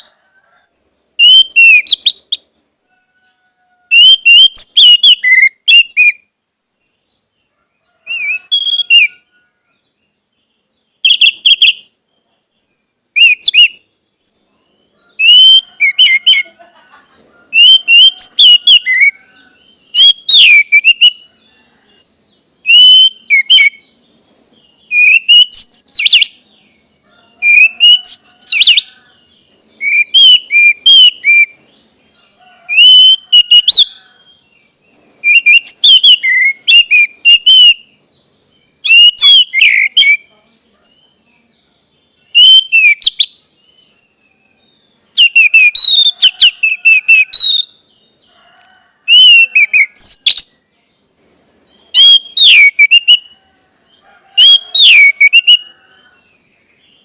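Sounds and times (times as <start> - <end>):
steady high hiss: 0.0 - 57.0
thrush whistled song: 1.2 - 2.5, 3.9 - 6.3, 8.0 - 9.4, 11.0 - 12.0, 12.7 - 13.9, 14.5 - 16.6, 17.5 - 22.0, 22.6 - 23.9, 24.7 - 26.4, 27.4 - 29.0, 29.7 - 31.6, 32.7 - 34.0, 35.2 - 37.9, 38.8 - 40.3, 42.3 - 43.8, 45.1 - 47.8, 49.1 - 50.6, 51.9 - 53.4, 54.4 - 55.9.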